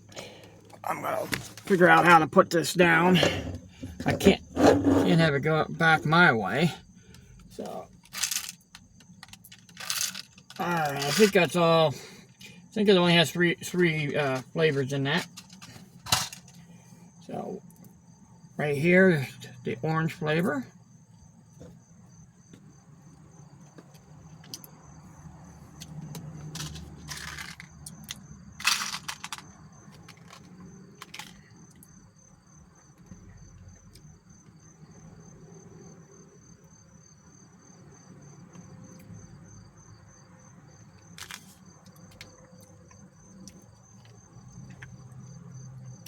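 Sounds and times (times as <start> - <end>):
crickets chirping: 0.0 - 46.0
handling clicks and rattles: 7.1 - 11.6, 14.1 - 16.7, 25.8 - 31.9.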